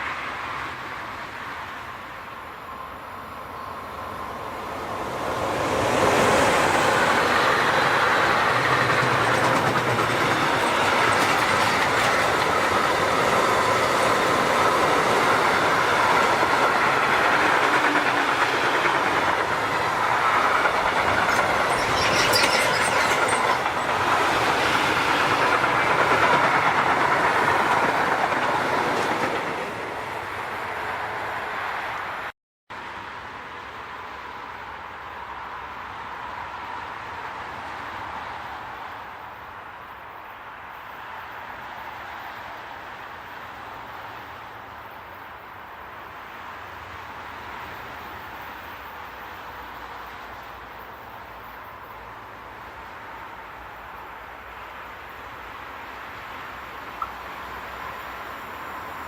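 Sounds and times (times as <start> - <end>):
train wheels rumbling on rails: 4.3 - 31.3.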